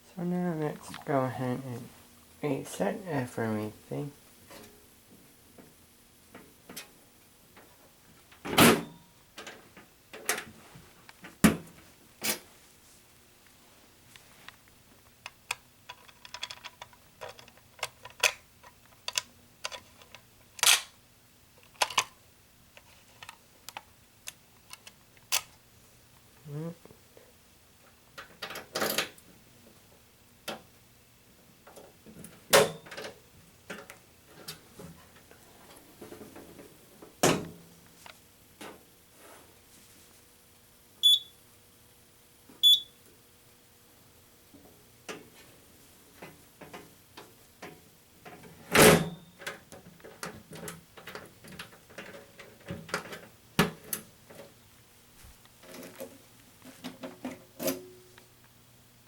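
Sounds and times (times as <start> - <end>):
clicks and knocks of hard objects: 15.2 - 20.9.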